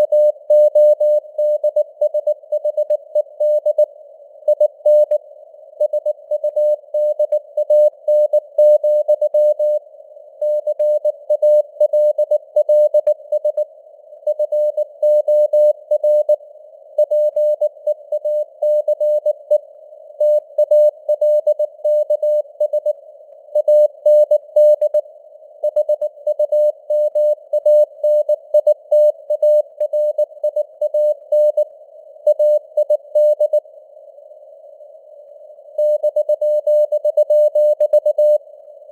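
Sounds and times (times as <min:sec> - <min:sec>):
faint radio noise hiss: 0:00.0 - 0:38.9
morse code beeps: 0:23.6 - 0:25.0, 0:35.8 - 0:38.4.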